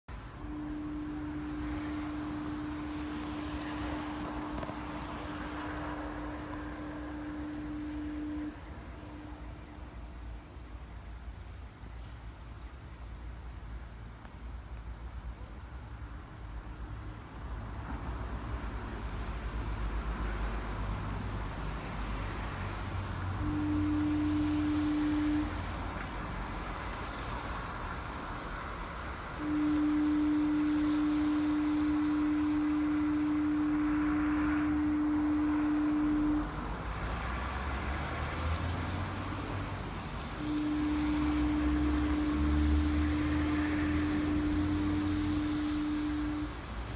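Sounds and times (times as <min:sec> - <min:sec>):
traffic rumble: 0:00.1 - 0:46.9
foghorn blast: 0:00.2 - 0:10.7, 0:22.1 - 0:28.0, 0:29.2 - 0:46.9
vehicle rushing past: 0:30.8 - 0:46.9.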